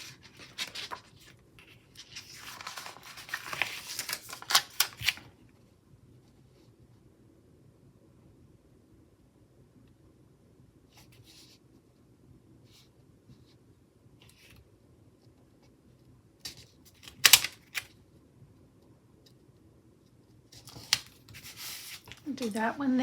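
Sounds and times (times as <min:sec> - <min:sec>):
paper stickers rustling: 0:00.0 - 0:05.3, 0:20.6 - 0:23.0.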